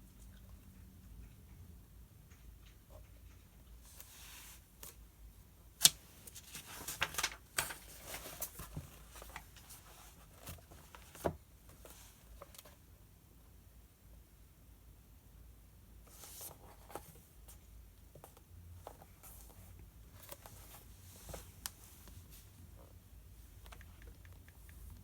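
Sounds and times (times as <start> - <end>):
paper pages rustling: 5.8 - 11.3.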